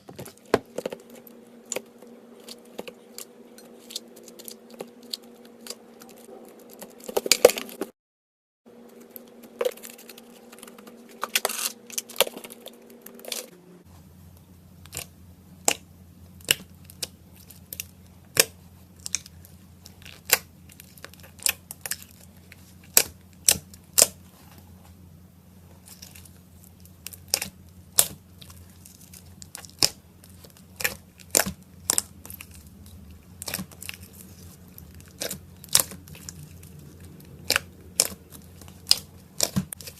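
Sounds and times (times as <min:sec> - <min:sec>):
low steady hum: 0:00.0 - 0:08.0, 0:08.7 - 0:39.9
slime crackling and popping: 0:14.8 - 0:24.2, 0:25.8 - 0:39.9.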